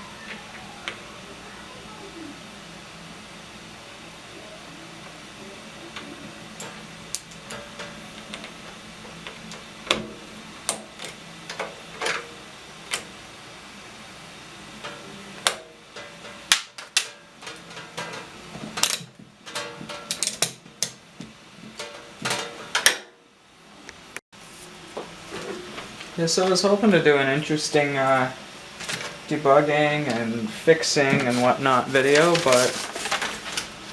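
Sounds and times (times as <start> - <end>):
tools and parts tapping: 14.8 - 23.0.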